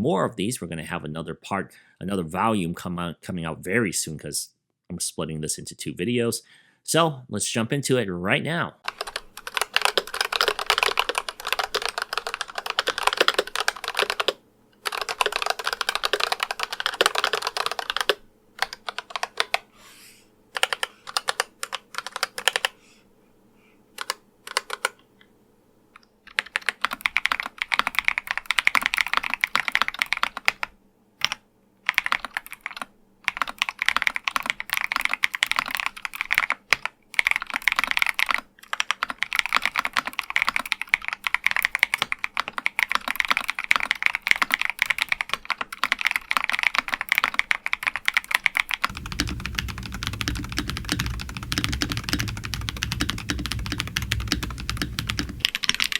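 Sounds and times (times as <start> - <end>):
keyboard typing: 8.8 - 19.6, 20.5 - 22.8, 24.0 - 25.0, 26.3 - 55.9
mechanical keyboard typing: 8.9 - 19.6, 20.5 - 22.8, 24.0 - 25.0, 26.3 - 55.9.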